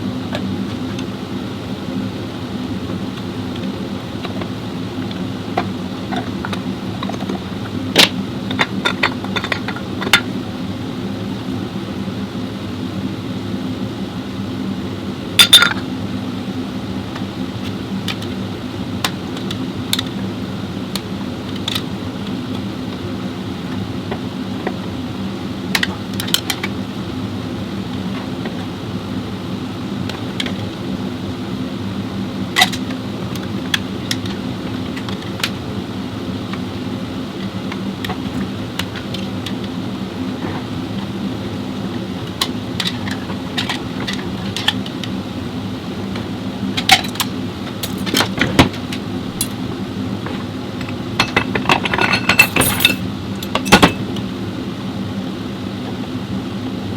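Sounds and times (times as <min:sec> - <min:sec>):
metallic clinks and knocks: 0:51.2 - 0:54.0.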